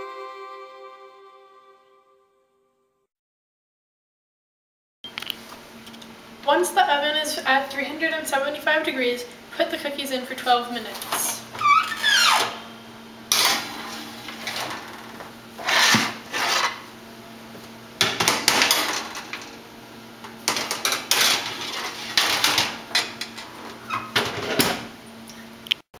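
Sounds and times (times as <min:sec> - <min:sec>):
kitchenware knocking and scraping: 0:20.5 - 0:23.5.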